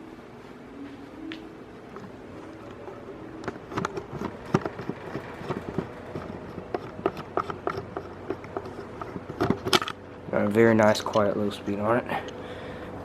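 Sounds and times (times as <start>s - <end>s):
box fan humming: 0.0s - 13.0s
sharp clicks and knocks: 3.4s - 10.0s.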